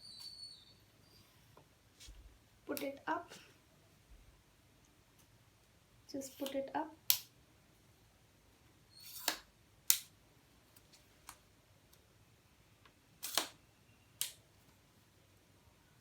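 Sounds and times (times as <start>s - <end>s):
tripod leg sliding scrape: 8.9s - 9.5s.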